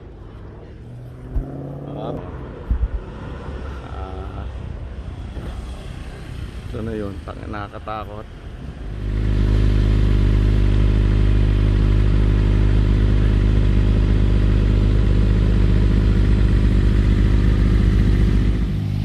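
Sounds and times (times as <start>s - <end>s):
motorcycle engine running: 9.0s - 19.0s.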